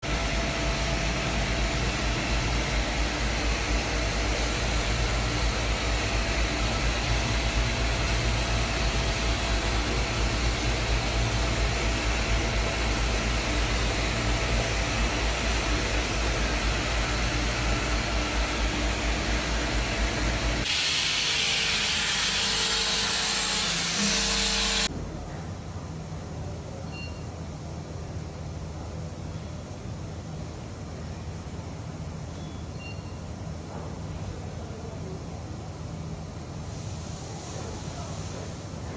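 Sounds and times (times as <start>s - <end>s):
machine tool running: 0.2s - 24.9s
loud hiss: 3.8s - 24.9s.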